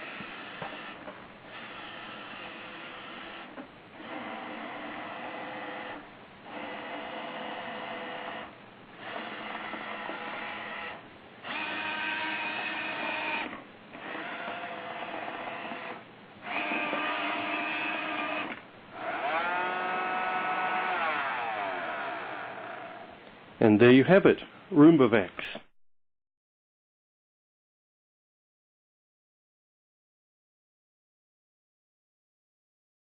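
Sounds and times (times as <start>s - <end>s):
robot vacuum motors whining: 0.0s - 23.2s.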